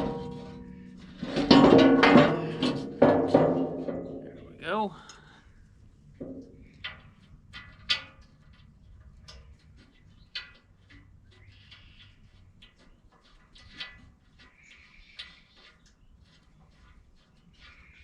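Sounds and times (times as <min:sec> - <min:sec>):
metal parts and tools clanking: 0:00.0 - 0:04.5.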